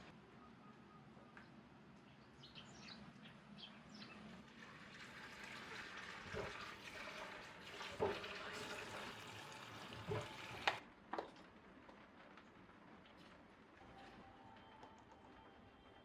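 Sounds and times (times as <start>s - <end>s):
water running: 4.4s - 10.8s.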